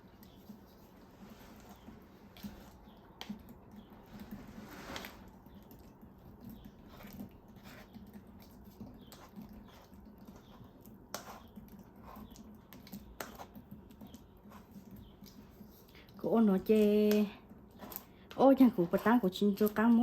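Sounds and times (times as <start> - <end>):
soft rustling: 0.1 - 2.8, 4.0 - 5.5.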